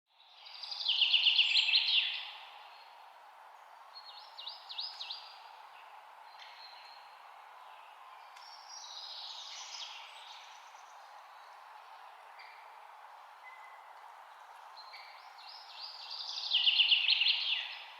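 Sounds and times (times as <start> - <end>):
outdoor background hiss: 0.1 - 17.9
songbirds singing: 0.1 - 17.9.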